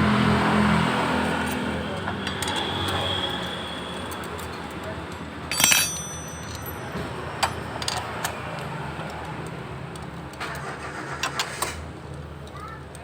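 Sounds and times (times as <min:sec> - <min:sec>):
metallic clicks and clinks: 0:01.4 - 0:03.2, 0:04.0 - 0:10.6.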